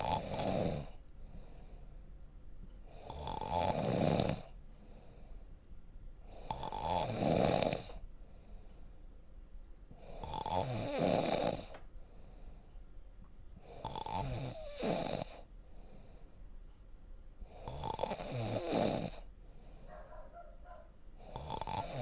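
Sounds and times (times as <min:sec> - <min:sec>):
person snoring: 0:00.0 - 0:01.0, 0:02.9 - 0:04.6, 0:06.3 - 0:08.0, 0:10.0 - 0:11.7, 0:13.7 - 0:15.5, 0:17.5 - 0:19.3, 0:21.2 - 0:22.0
quiet breathing: 0:00.0 - 0:06.7, 0:07.6 - 0:09.3, 0:09.9 - 0:22.0.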